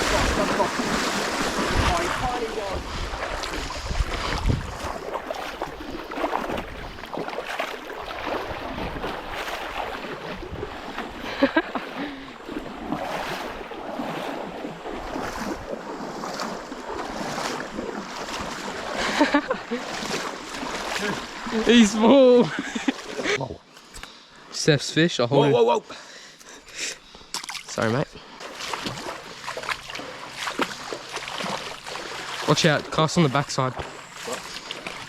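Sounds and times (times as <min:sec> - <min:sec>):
wind buffeting microphone: 0:00.0 - 0:07.0
creek water splashing: 0:00.0 - 0:25.1, 0:25.8 - 0:35.0.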